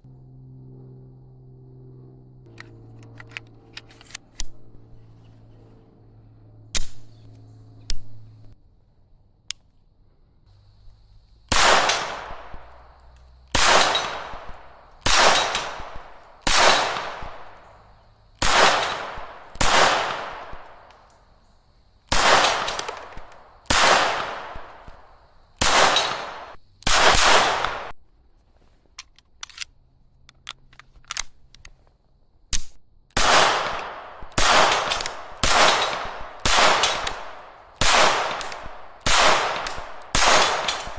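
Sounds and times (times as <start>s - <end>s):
pistol shots echoing: 11.5s - 12.8s, 13.5s - 17.7s, 18.4s - 20.9s, 22.1s - 25.0s, 25.6s - 27.9s, 33.2s - 40.9s.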